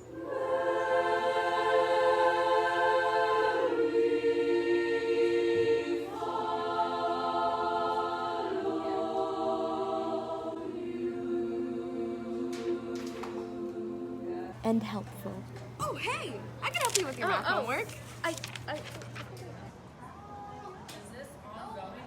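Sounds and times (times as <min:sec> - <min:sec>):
women's choir singing chords: 0:00.0 - 0:14.7.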